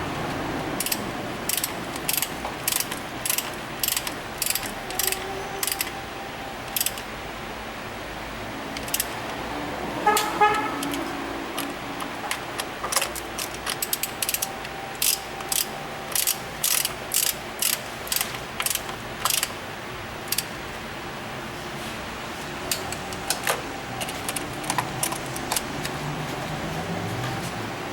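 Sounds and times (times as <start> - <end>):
ratchet wrench clicking: 0.8 - 6.0, 6.7 - 7.1, 8.8 - 9.3, 10.1 - 11.7, 12.3 - 19.6, 20.2 - 20.6, 22.7 - 23.4.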